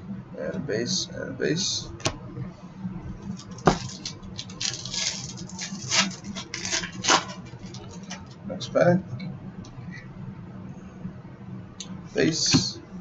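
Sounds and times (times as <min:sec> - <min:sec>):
cards and foil pack rustling: 0:03.2 - 0:08.4.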